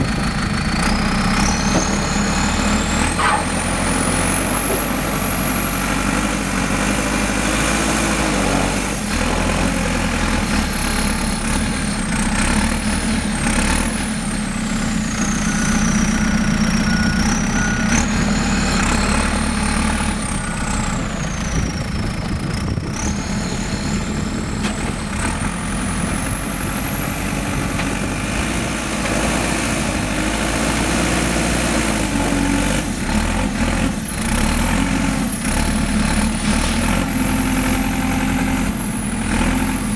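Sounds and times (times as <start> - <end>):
diesel engine idling: 0.0 - 39.9.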